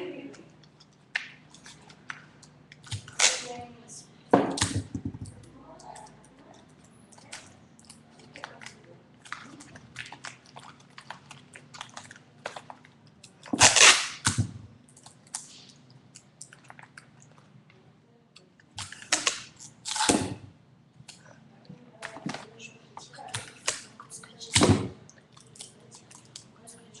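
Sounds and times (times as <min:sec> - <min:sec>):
adhesive tape ripping off roll: 0:02.9 - 0:03.6, 0:13.5 - 0:14.6, 0:18.8 - 0:20.5, 0:23.4 - 0:23.9.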